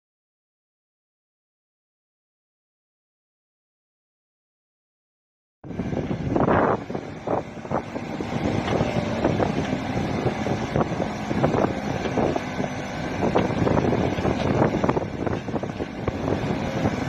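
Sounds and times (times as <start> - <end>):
diesel engine under load: 5.6 - 17.0.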